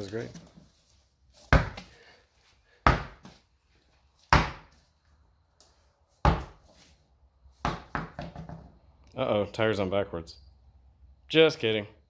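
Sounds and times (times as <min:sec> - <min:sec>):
hard thuds: 0:02.8 - 0:03.4.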